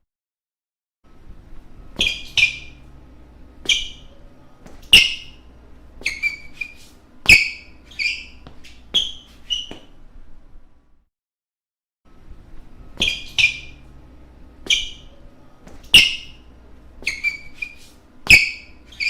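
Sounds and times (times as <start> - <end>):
shoe soles squeaking on hardwood: 2.0 - 2.8, 3.6 - 5.4, 6.0 - 10.0, 13.0 - 13.8, 14.6 - 19.0.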